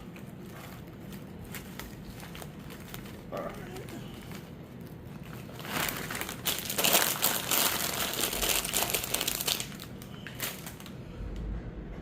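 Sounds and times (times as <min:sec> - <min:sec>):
packaging crinkling: 0:00.0 - 0:11.0.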